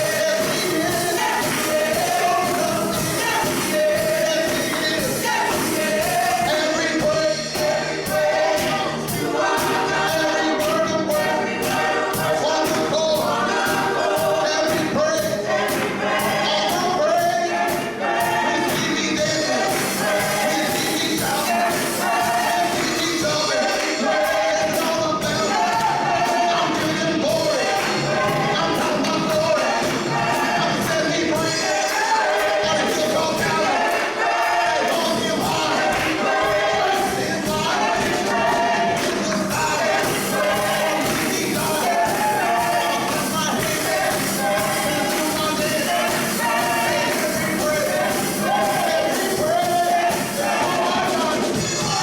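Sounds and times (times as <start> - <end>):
band playing steady beat: 0.0 - 52.0
gospel choir singing: 0.0 - 52.0.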